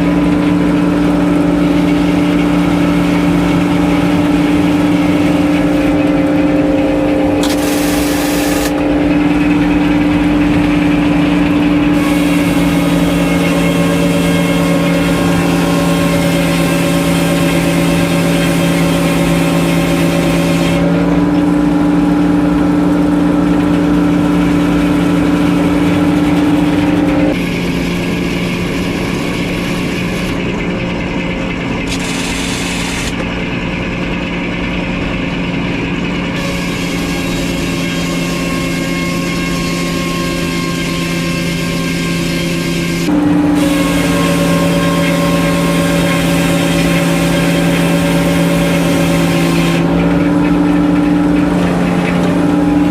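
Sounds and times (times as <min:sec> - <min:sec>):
engine running steadily: 0:00.0 - 0:52.9
saw cutting hiss: 0:07.3 - 0:08.8, 0:11.9 - 0:20.8, 0:31.9 - 0:33.2, 0:36.4 - 0:49.8.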